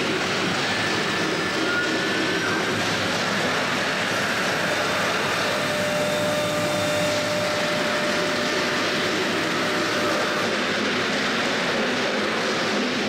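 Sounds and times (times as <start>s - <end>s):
cnc router running: 0.0s - 13.0s
lower whine: 0.0s - 13.0s
faint whining tones: 0.8s - 10.6s.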